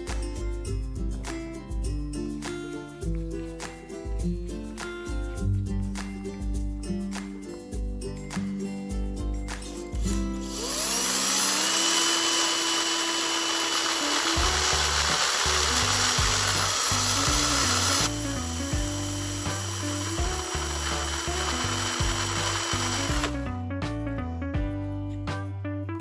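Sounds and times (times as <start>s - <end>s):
background music: 0.0s - 26.0s
power tool motor whining: 10.4s - 23.4s.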